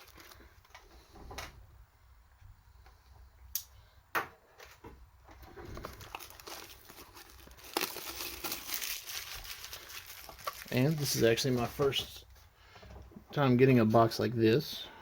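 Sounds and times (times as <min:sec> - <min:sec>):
packaging rustling: 0:00.0 - 0:00.8, 0:05.4 - 0:12.2.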